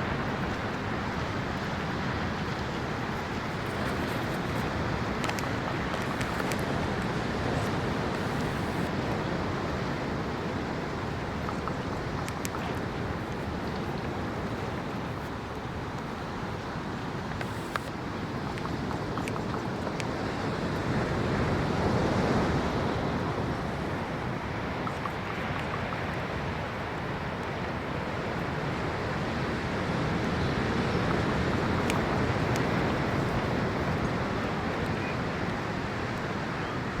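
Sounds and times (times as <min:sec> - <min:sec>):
wind: 0:00.0 - 0:37.0
sharp clicks: 0:03.4 - 0:08.9, 0:17.2 - 0:18.0.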